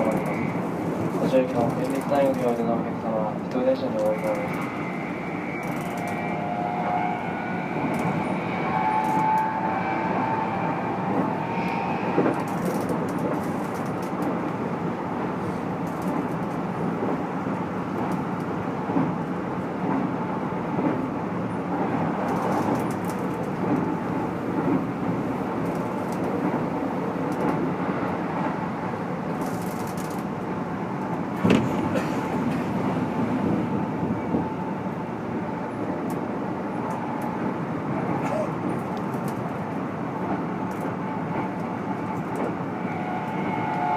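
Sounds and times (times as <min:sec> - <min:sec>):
train wheel and rail noise: 0:00.0 - 0:43.9
sharp clacks from rail joints: 0:05.6 - 0:06.3, 0:11.6 - 0:14.6, 0:21.8 - 0:27.7, 0:29.3 - 0:30.3, 0:31.0 - 0:33.0.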